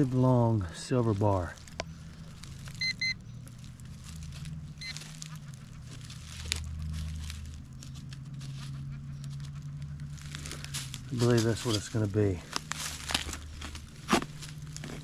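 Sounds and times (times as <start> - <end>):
low steady hum: 0.0 - 15.0
metal detector beep: 2.8 - 3.2, 4.8 - 5.0
faint scrapes and ticks: 3.4 - 15.0.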